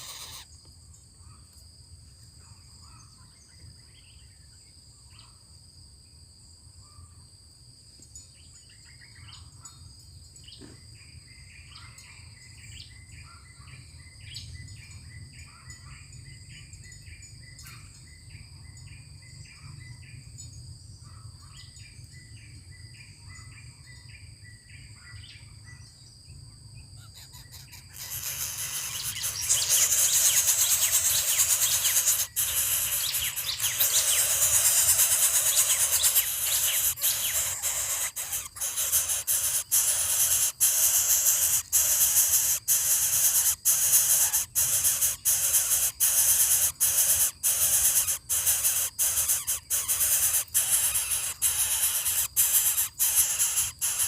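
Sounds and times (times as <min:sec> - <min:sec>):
bird chirping: 0:00.0 - 0:00.5, 0:27.0 - 0:54.0
high insect trilling: 0:00.0 - 0:00.5, 0:27.0 - 0:54.0.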